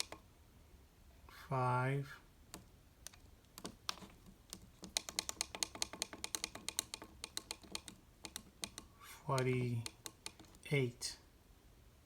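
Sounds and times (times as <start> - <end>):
alarm clock buttons clicking: 0.0 - 0.2, 4.8 - 10.6.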